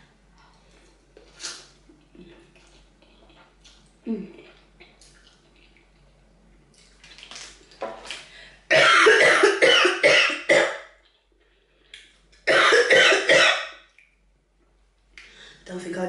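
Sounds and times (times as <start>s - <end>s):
person coughing hard: 8.7s - 10.8s, 12.5s - 13.7s.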